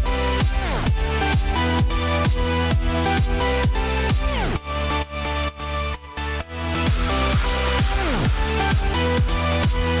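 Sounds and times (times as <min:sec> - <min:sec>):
kick drum beat: 0:00.0 - 0:04.6, 0:06.8 - 0:10.0.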